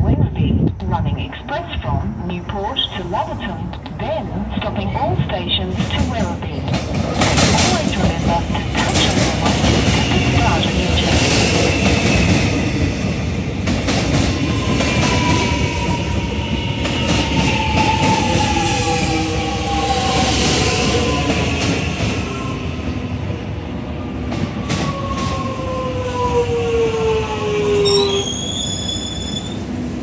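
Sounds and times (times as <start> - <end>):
electric train passing: 0.6 - 30.0
high multi-tone squeal: 27.8 - 29.6.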